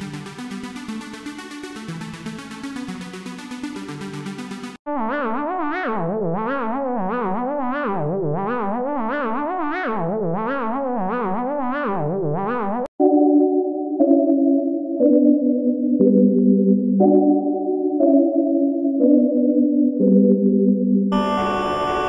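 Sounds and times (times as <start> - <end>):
distorted wobbling synth tone: 21.1 - 22.0
electronic dance music: 21.1 - 22.0.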